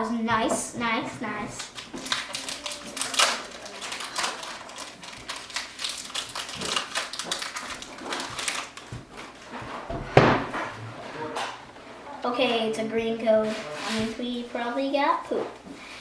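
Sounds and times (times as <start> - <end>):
cards rustling and clicking: 1.6 - 9.5
loud knock: 10.0 - 10.8.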